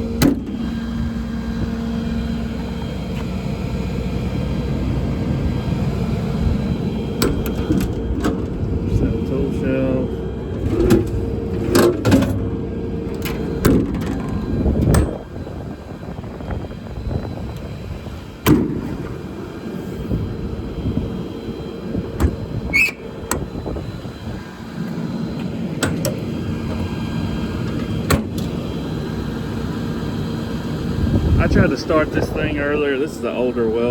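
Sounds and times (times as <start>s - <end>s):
steady low hum: 0.0s - 33.9s
compartment doors clunking: 7.2s - 8.6s, 25.8s - 26.9s
short squeak: 22.7s - 23.0s.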